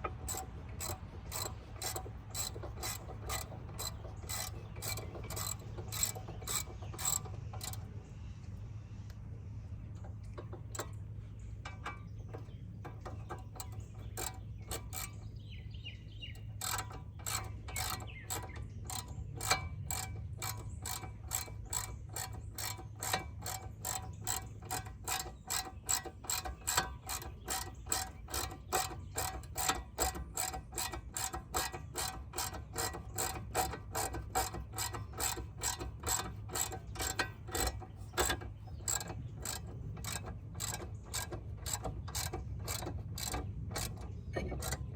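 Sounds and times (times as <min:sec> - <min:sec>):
ratchet wrench clicking: 0:00.0 - 0:07.9, 0:11.6 - 0:15.4, 0:16.2 - 0:44.9.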